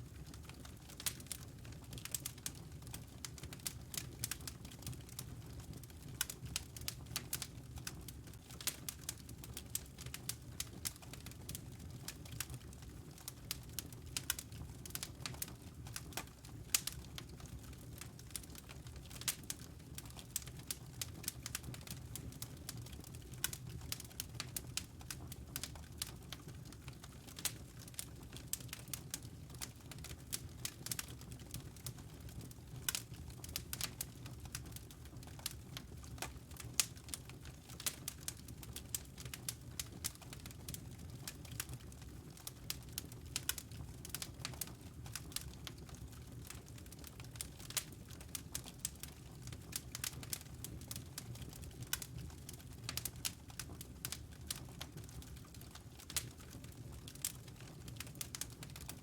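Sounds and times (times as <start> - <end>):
wood fire crackling and popping: 0.0 - 59.0.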